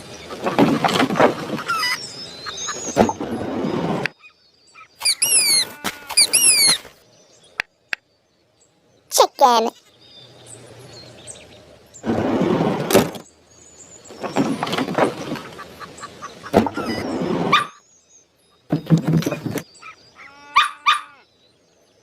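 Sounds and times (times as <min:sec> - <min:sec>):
chicken squawking: 0:01.4 - 0:03.0, 0:04.2 - 0:06.9, 0:15.3 - 0:17.8, 0:19.8 - 0:21.2.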